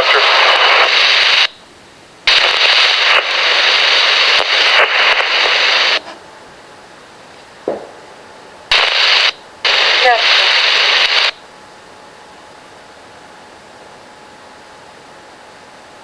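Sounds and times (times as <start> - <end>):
radio static hiss: 0.0 - 6.2, 8.7 - 11.5.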